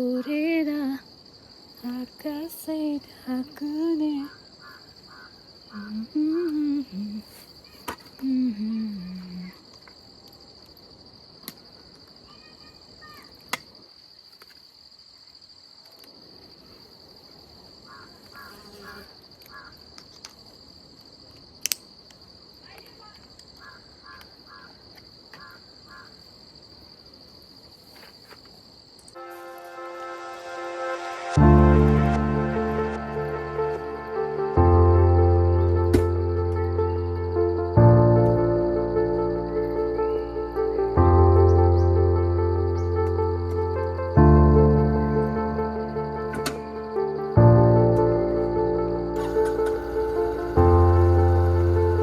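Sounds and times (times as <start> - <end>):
woman singing: 0.0 - 1.0, 1.8 - 4.3, 5.8 - 7.3
crickets droning: 0.0 - 52.0.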